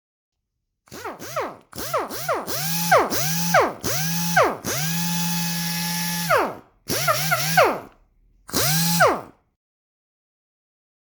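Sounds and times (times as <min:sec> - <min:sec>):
air sander whine: 0:02.6 - 0:07.9.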